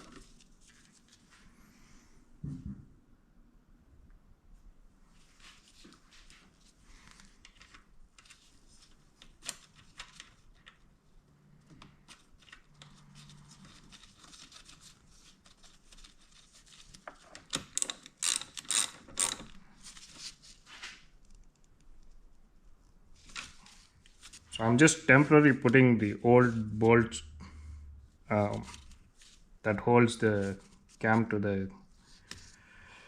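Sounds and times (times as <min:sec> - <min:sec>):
ratchet wrench clicking: 0:17.8 - 0:19.4.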